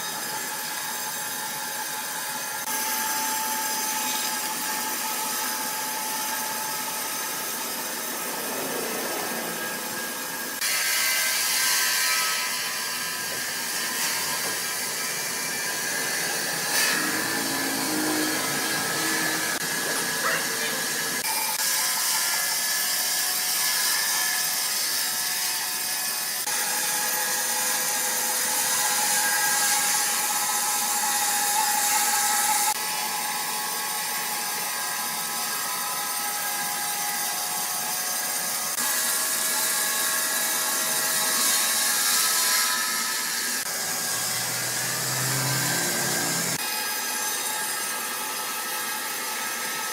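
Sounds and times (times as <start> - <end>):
sawmill saws hissing: 6.3 - 12.2, 12.9 - 22.3, 42.5 - 47.4.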